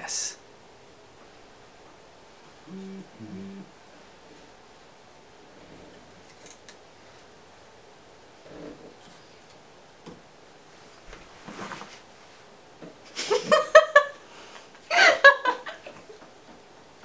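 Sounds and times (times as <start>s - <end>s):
people laughing: 14.9s - 16.2s.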